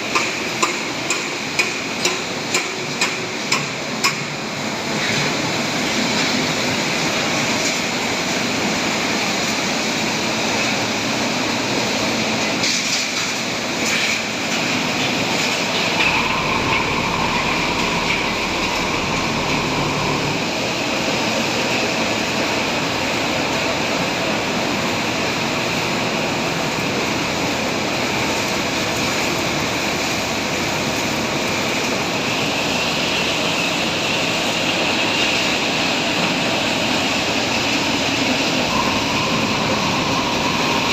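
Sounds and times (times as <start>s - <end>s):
hammer mill running: 13.4s - 25.8s, 30.4s - 40.9s.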